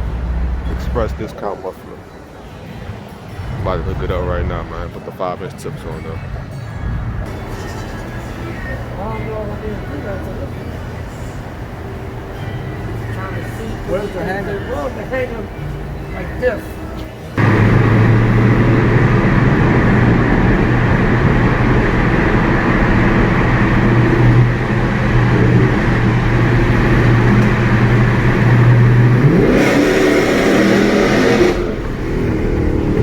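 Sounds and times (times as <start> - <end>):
car exhaust droning and revving: 6.3 - 15.9, 17.4 - 33.0.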